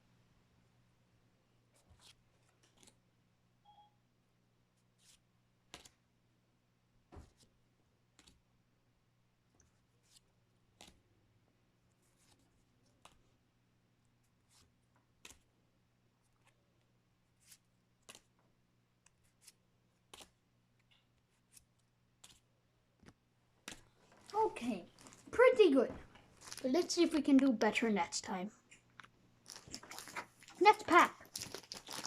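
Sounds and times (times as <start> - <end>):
cards being flipped: 1.8 - 3.0, 5.0 - 6.0, 8.2 - 8.4, 10.0 - 11.0, 14.5 - 15.5, 17.4 - 18.4, 19.0 - 20.4, 21.1 - 25.3, 29.0 - 32.0.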